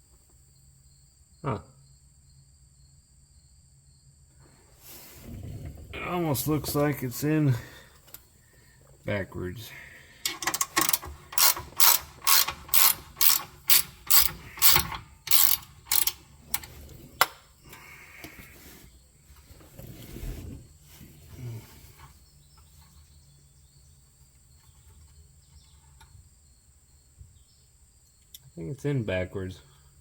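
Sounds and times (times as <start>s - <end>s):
ratchet wrench clicking: 10.2s - 16.7s.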